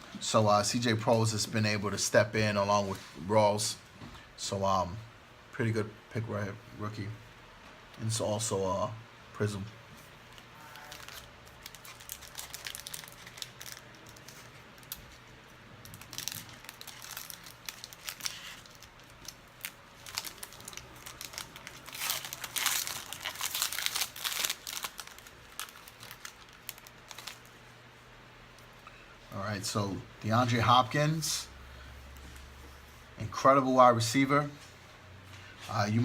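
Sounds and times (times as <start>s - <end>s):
wrapper tearing: 10.3s - 15.2s, 15.8s - 27.5s
card pack wrapper crinkling: 10.3s - 27.5s.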